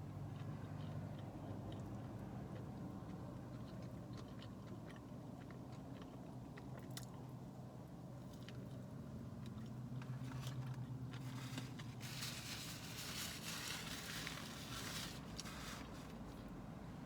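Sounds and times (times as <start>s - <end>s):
chewing and crunching crispy food: 0.0s - 16.6s
crackly rustling: 9.5s - 16.5s.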